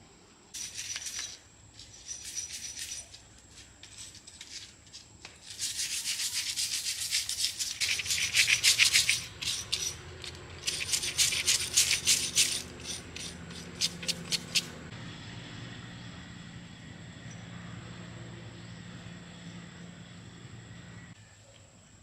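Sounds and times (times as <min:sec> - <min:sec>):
hand rubbing strokes: 0:00.6 - 0:14.8.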